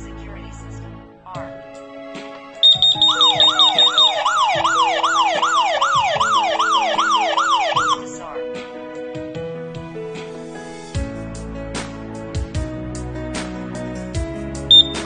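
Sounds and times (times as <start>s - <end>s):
rapid high-pitched beeps: 2.6s - 8.0s, 14.7s - 15.0s
electronic siren sweeping: 2.6s - 8.1s.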